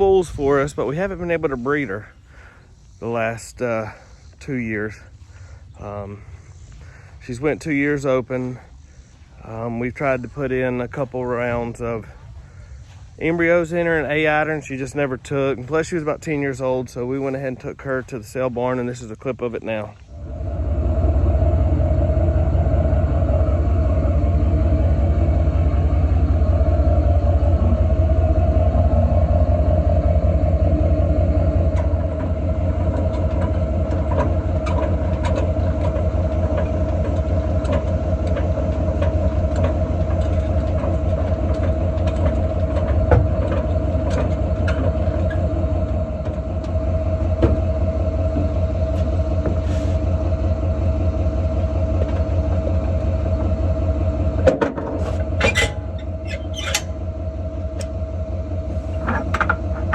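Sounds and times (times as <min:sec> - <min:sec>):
constant hum: 0:00.0 - 0:59.9
vehicle engine rumbling: 0:00.0 - 0:59.9
clicks and rattles: 0:58.9 - 0:59.9.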